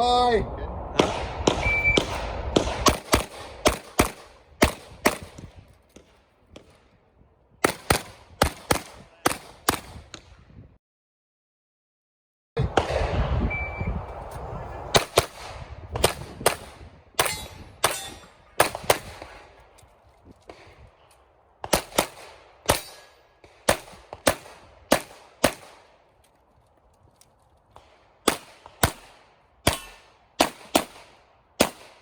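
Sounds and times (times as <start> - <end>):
pistol shots: 1.0 - 6.8, 7.6 - 10.2, 14.9 - 19.6, 21.6 - 26.0, 27.8 - 32.0
electronic timer beep: 1.6 - 2.1, 13.5 - 14.0.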